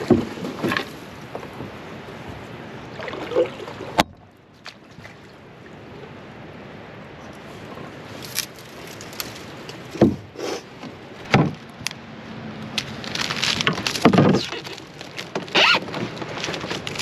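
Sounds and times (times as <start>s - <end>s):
canoe knocking against logs: 0.0s - 1.8s, 3.9s - 4.3s, 9.7s - 11.8s, 13.6s - 14.6s
rustling and scraping of branches: 0.0s - 2.6s, 7.2s - 17.0s.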